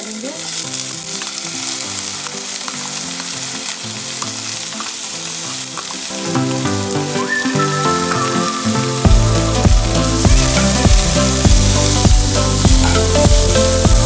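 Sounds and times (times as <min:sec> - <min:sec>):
background music: 0:00.0 - 0:14.0
onion sizzling in oil: 0:00.0 - 0:14.0.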